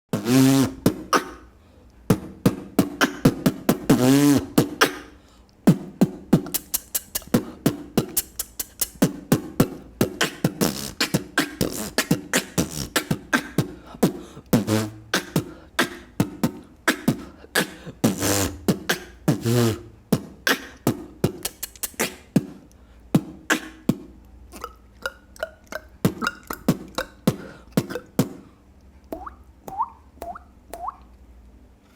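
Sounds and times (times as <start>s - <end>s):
beatboxing kick and snare clicks: 0.2s - 28.5s, 29.1s - 31.1s
hummed bass notes: 18.0s - 21.6s.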